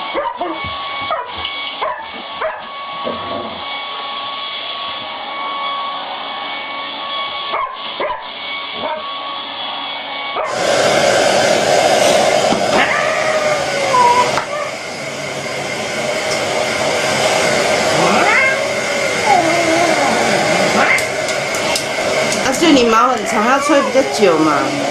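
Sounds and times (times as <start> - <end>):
hair dryer blowing: 0.0 - 24.9
dog barking and yipping: 0.1 - 2.7, 7.5 - 9.0, 12.8 - 14.8, 18.2 - 21.2, 23.0 - 24.9
loud rush of air: 10.4 - 23.8.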